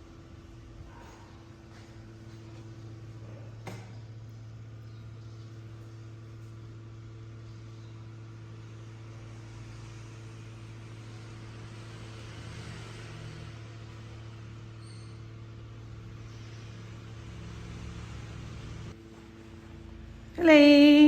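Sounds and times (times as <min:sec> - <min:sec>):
machine hum: 0:00.0 - 0:21.0.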